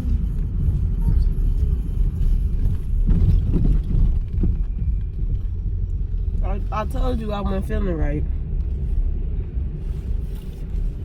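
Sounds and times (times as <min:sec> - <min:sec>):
car engine and tyres rumbling: 0:00.0 - 0:11.0.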